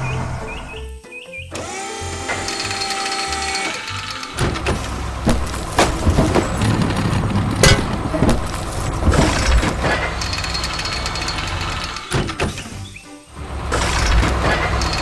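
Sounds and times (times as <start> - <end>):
construction machine engine rumbling: 0.0 - 15.0
clanking knocks: 2.4 - 12.8.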